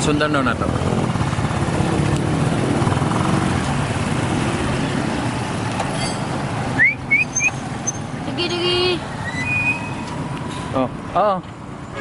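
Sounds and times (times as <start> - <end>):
motor vehicle running: 0.0 - 11.9
high rising chirp: 6.8 - 10.1.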